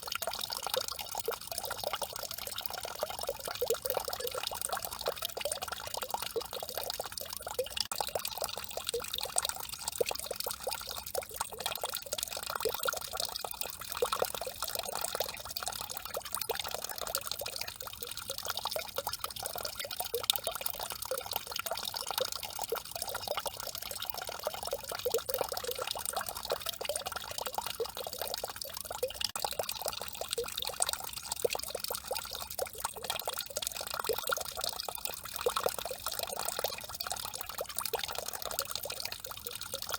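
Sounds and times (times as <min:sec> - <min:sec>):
fountain water splashing into basin: 0:00.0 - 0:39.9.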